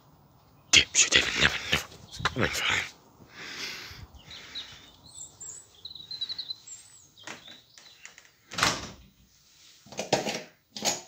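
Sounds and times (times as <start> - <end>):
faint bird chirps: 0.0 - 8.5.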